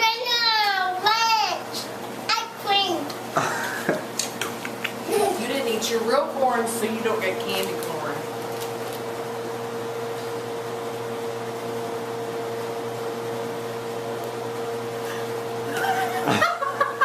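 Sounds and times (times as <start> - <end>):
voices: 0.0 - 8.3
steady mechanical hum: 0.0 - 17.0.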